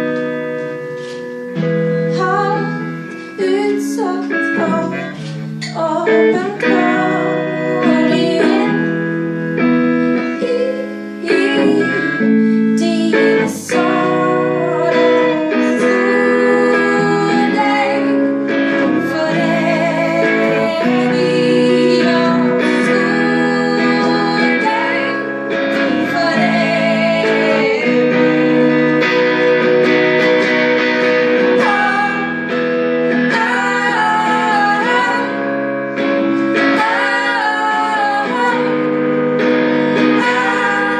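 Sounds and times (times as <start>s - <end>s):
plucked string accompaniment: 0.0s - 40.9s
woman singing: 2.0s - 40.9s.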